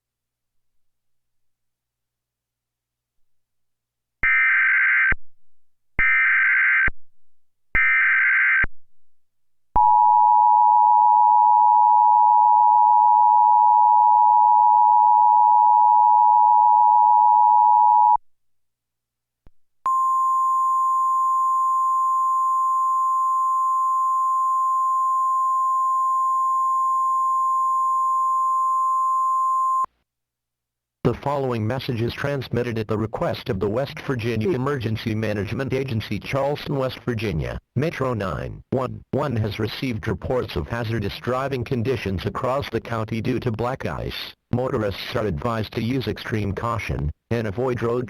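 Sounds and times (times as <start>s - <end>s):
single steady tone: 19.8s - 29.9s.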